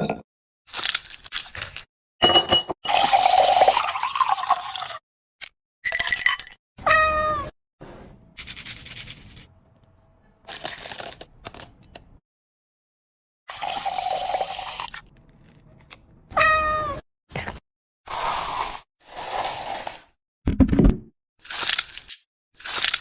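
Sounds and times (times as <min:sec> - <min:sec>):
cat meowing: 0:06.8 - 0:07.5, 0:16.3 - 0:17.0.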